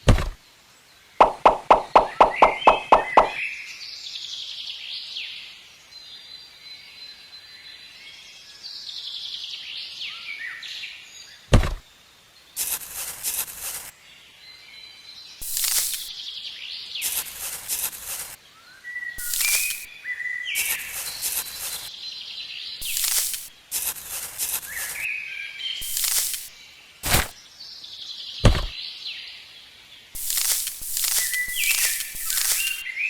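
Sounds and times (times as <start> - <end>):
sharp knocks: 0.0 - 0.4, 1.2 - 3.4, 11.5 - 11.8, 28.4 - 28.8
small birds chirping: 0.0 - 33.0
short bursts of noise: 1.2 - 3.4, 12.6 - 13.9, 15.4 - 16.1, 17.0 - 18.4, 19.2 - 19.9, 20.6 - 21.9, 22.8 - 25.0, 25.8 - 27.4, 30.2 - 32.8.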